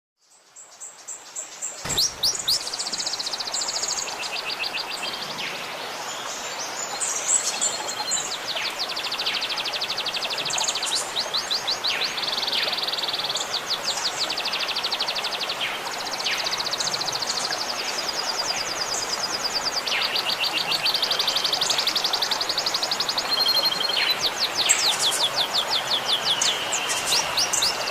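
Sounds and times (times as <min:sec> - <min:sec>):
trickle of running water: 0:00.6 - 0:27.9
songbird trilling: 0:01.9 - 0:03.3.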